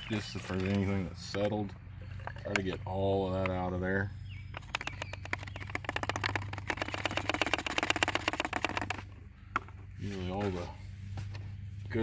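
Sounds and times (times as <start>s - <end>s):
bottle being shaken: 4.6s - 9.0s.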